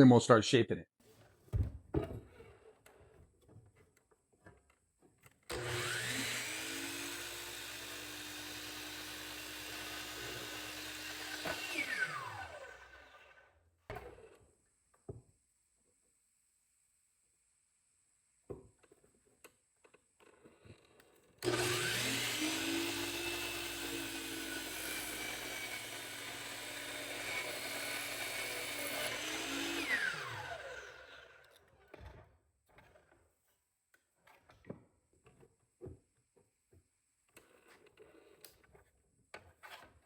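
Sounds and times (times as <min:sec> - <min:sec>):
power tool motor whining: 0:05.5 - 0:13.5, 0:21.4 - 0:31.6.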